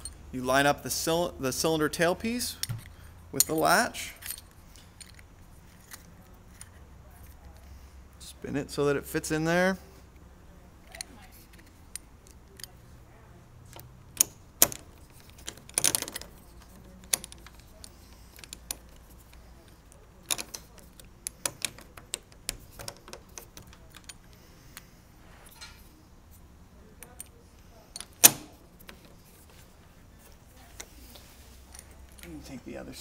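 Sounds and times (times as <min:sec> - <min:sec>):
deadbolt parts clicking and rattling: 0:13.7 - 0:24.9, 0:27.0 - 0:29.5.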